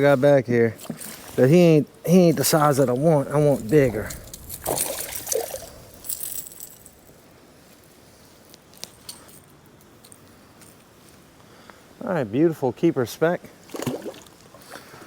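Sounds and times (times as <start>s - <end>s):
water splashing and trickling: 0.8s - 1.7s, 2.3s - 7.3s, 13.7s - 15.0s.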